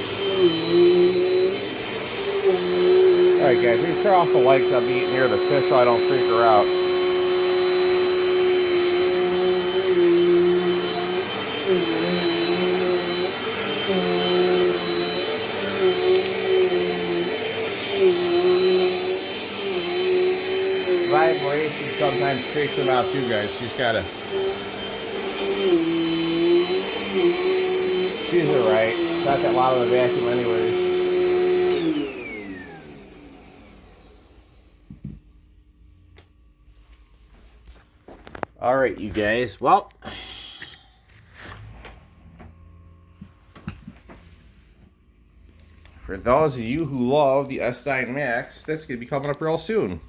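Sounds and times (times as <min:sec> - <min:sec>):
vacuum cleaner motor whine: 0:00.0 - 0:50.0.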